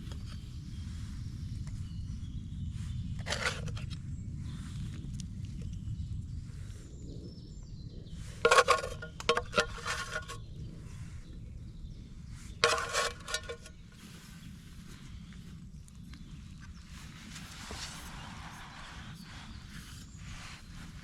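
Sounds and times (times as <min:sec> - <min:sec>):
steady low rumble: 0:00.0 - 0:21.0
metal cookware clattering: 0:08.5 - 0:10.4, 0:12.6 - 0:13.7.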